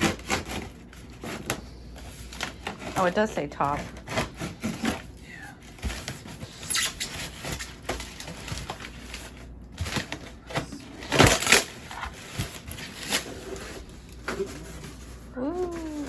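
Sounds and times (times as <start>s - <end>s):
cardboard scraping and rustling: 0.0s - 16.0s.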